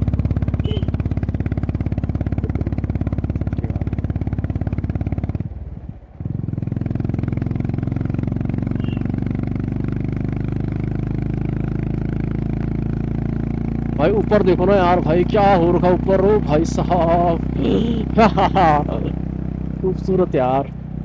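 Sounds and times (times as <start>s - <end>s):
motorcycle engine pulsing thump: 0.0s - 5.5s.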